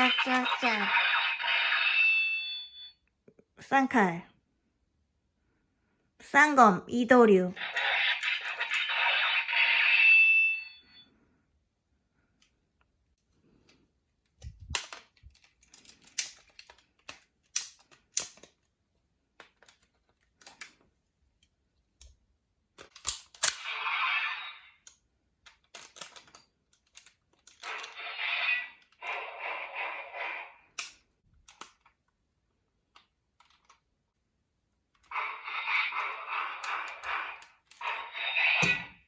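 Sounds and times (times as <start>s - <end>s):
paper toys clicking and tapping: 14.6s - 21.5s, 24.8s - 28.0s.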